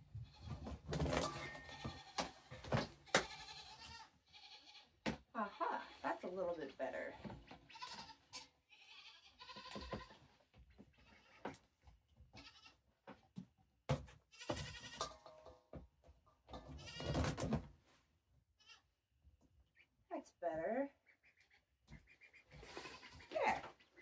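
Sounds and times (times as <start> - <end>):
goat bleating: 0.2 - 0.6, 1.6 - 10.3, 10.9 - 11.5, 12.3 - 12.8, 14.3 - 15.0, 16.8 - 17.2, 18.6 - 18.9, 22.6 - 24.0
light knocks and clatters: 0.2 - 3.4.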